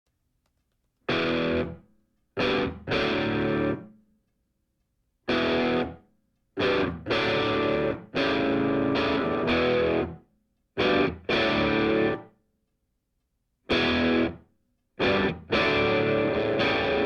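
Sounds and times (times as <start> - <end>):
distorted electric guitar chords: 1.1 - 1.8, 2.4 - 3.9, 5.3 - 6.0, 6.6 - 10.2, 10.8 - 12.2, 13.7 - 14.4, 15.0 - 17.0.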